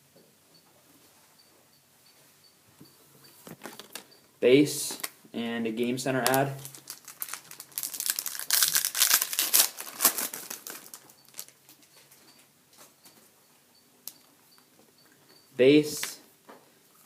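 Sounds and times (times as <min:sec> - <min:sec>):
card pack wrapper tearing: 0:06.2 - 0:11.6.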